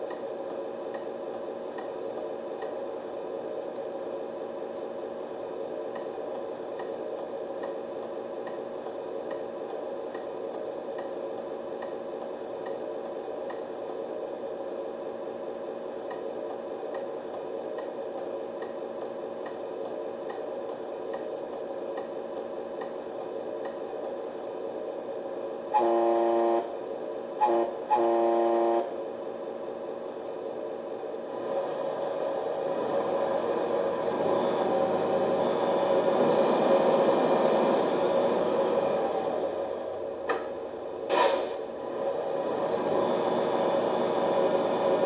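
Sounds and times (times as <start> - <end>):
truck horn blast: 25.7 - 26.8, 27.4 - 29.0.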